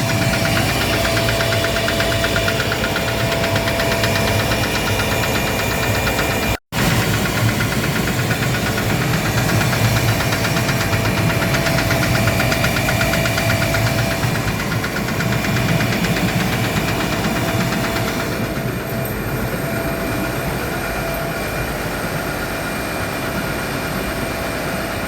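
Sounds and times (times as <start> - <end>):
rapid even knocking: 0.0 - 19.0
air compressor hum and whine: 0.0 - 25.0.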